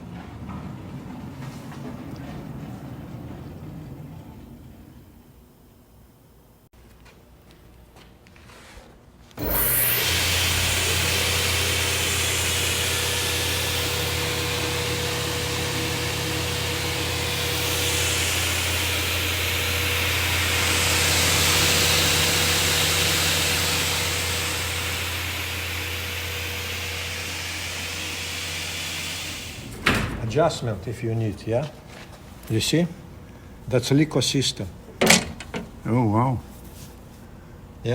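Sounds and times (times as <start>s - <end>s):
saw cutting wood: 9.4s - 29.7s
table saw humming: 9.4s - 31.3s.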